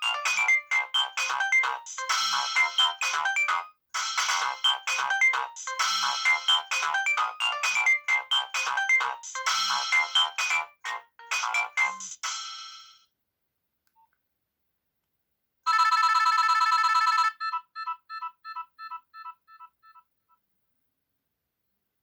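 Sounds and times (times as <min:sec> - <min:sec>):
electronic ringtone melody: 0:00.0 - 0:13.0, 0:15.7 - 0:20.0.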